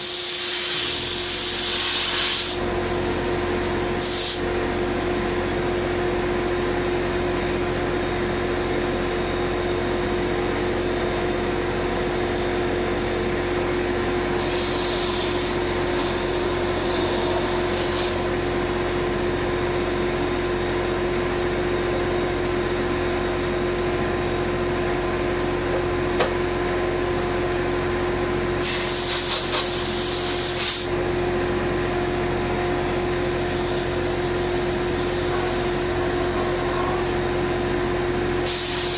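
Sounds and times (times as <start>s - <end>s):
electric sander on wood: 14.4s - 18.3s, 33.2s - 37.6s.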